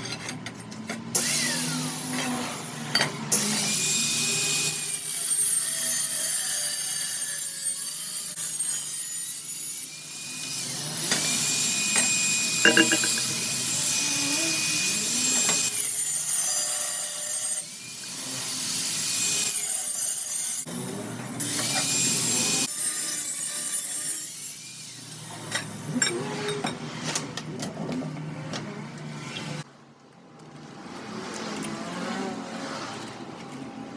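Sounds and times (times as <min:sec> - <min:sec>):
power saw cutting metal pipe: 0:01.2 - 0:26.7.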